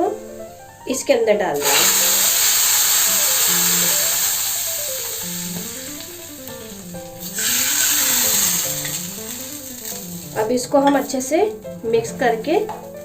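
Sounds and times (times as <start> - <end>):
background music with melody: 0.0 - 13.0
hot oil sizzling: 1.6 - 13.0.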